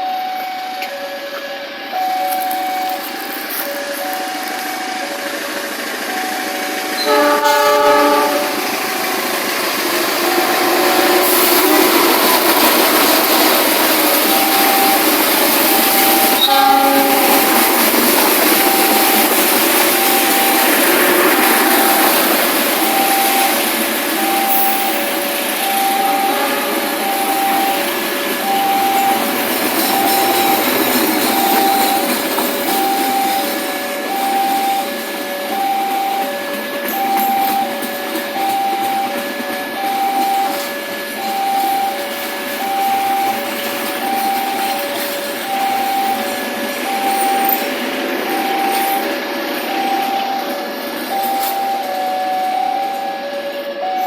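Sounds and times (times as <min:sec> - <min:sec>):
two-tone electronic warning beeps: 0:00.0 - 0:05.2, 0:06.0 - 0:09.1, 0:10.2 - 0:54.0
train wheels rolling: 0:00.3 - 0:53.9
train horn: 0:06.9 - 0:09.4, 0:10.1 - 0:14.3, 0:15.4 - 0:23.6, 0:24.5 - 0:27.9.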